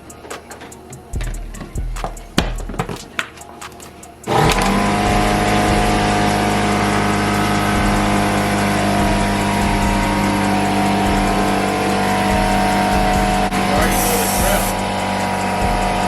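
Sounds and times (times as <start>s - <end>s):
car engine idling: 4.1s - 16.0s.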